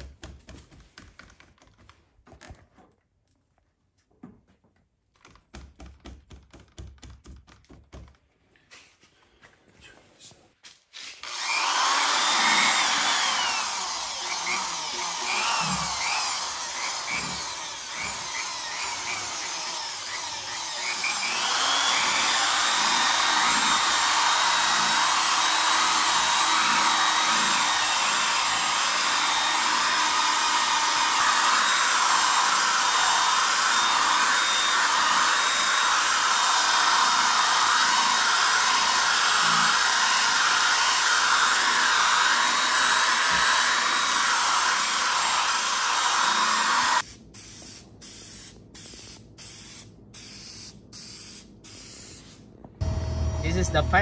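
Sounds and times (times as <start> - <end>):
power sander running: 11.2 - 47.1, 52.8 - 54.0.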